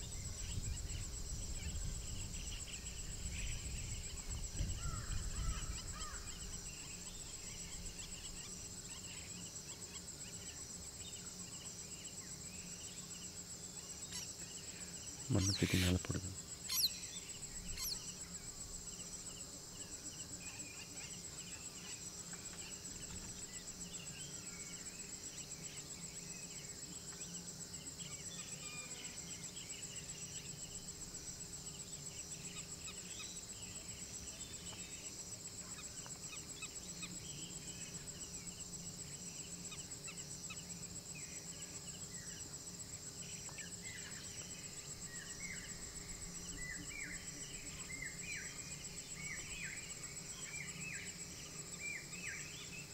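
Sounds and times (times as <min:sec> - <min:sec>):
crickets trilling: 0:00.0 - 0:52.9
insect chirping calls: 0:00.0 - 0:52.9.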